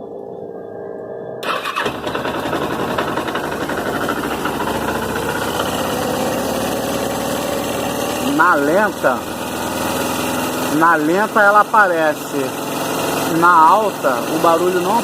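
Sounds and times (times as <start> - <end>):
motorcycle engine idling: 1.4 - 15.0.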